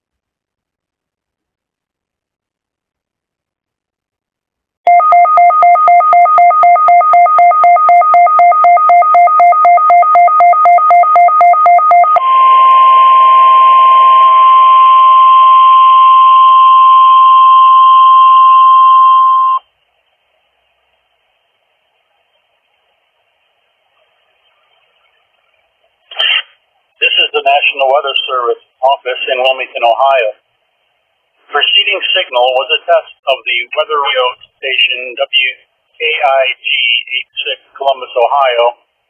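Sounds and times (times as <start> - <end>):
radio hiss: 23.6 - 30.3, 31.4 - 38.7.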